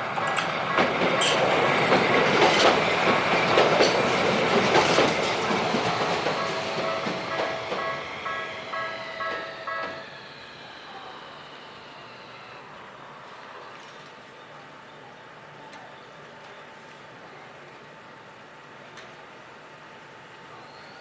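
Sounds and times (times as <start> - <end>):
tram wheels clacking over rail joints: 0.0 - 10.2
level crossing warning bell: 0.2 - 2.8, 6.2 - 10.2.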